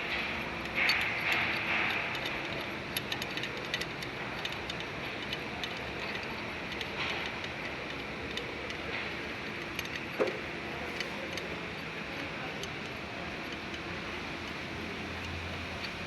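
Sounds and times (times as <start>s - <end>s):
steady background noise: 0.0s - 16.0s
sharp metallic clicks and taps: 0.1s - 11.9s.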